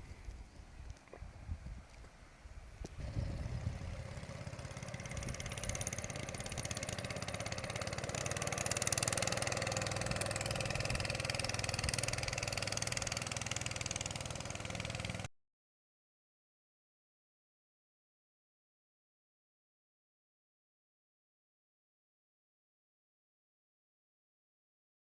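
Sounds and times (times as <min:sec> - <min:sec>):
small engine running: 0:03.0 - 0:15.3.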